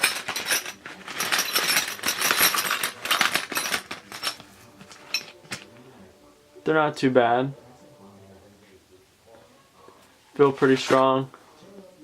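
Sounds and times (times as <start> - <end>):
hex keys clicking and rattling: 0.0 - 5.3.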